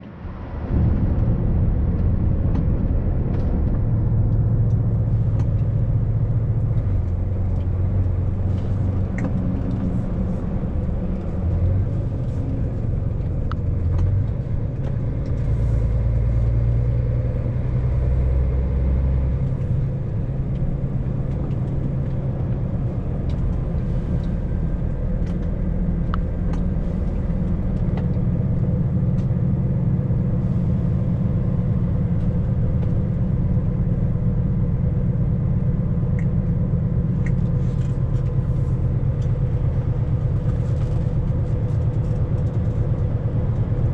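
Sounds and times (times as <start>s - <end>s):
vehicle engine and road rumble: 0.0s - 43.9s.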